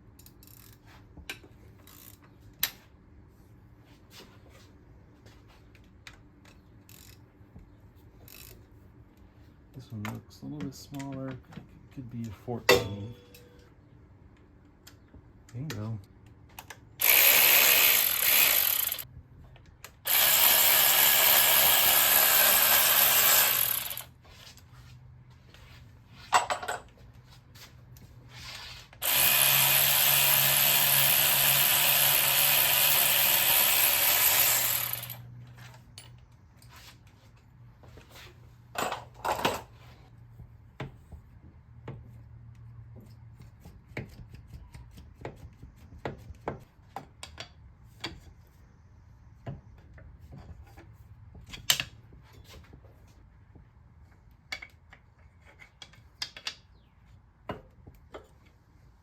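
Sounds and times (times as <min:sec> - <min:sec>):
power tool running: 0:17.0 - 0:19.0, 0:20.1 - 0:24.1, 0:29.0 - 0:35.3.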